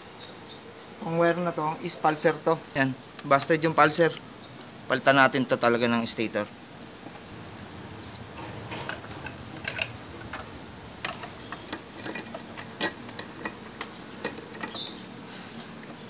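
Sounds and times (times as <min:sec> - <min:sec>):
hand tools clicking and knocking: 0:08.4 - 0:16.0.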